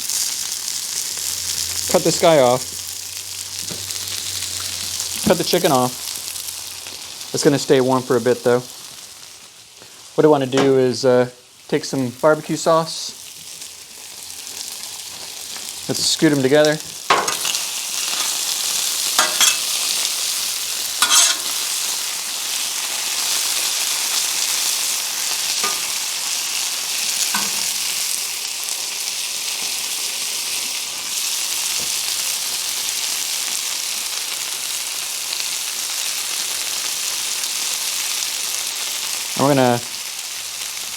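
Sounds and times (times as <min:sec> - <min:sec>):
chicken sizzling on a griddle: 0:00.0 - 0:40.9
spatula scraping griddle: 0:17.1 - 0:22.1, 0:25.4 - 0:26.3, 0:27.0 - 0:28.2.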